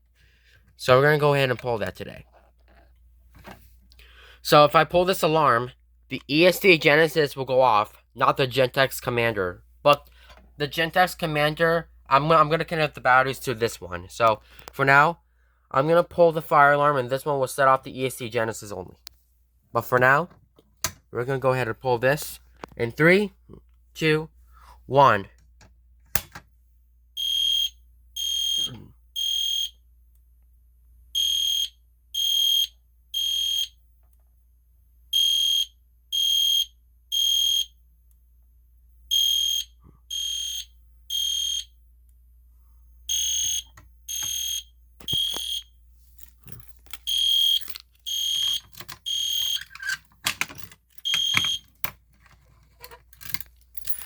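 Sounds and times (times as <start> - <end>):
fire alarm horn beeps: 27.2 - 29.8, 31.2 - 33.8, 35.1 - 37.8, 39.1 - 41.7, 43.1 - 45.7, 47.1 - 49.9, 51.0 - 51.7.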